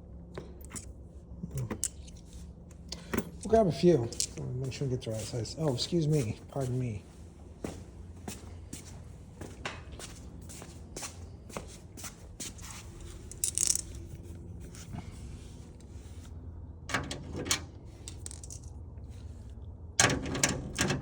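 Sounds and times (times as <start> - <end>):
metal tools clicking and clinking: 1.5 - 4.4, 13.0 - 14.1, 18.0 - 18.7
metal tools clattering: 1.5 - 4.5, 13.0 - 14.1.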